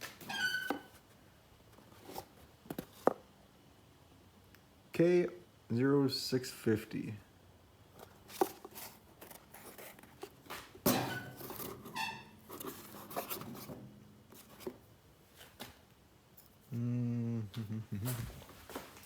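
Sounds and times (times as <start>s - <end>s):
short squeak: 0.2s - 0.9s, 11.0s - 12.4s.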